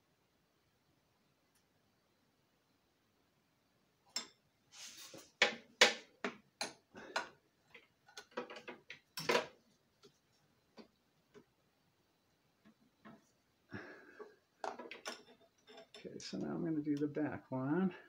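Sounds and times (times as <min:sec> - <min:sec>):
metal parts knocking and clinking: 0:06.6 - 0:09.6, 0:14.6 - 0:16.1.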